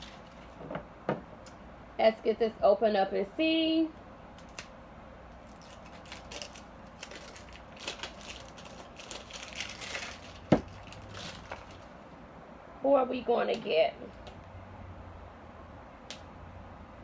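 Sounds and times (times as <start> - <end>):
plastic wrapping crinkling: 0.0 - 0.8, 5.3 - 12.2.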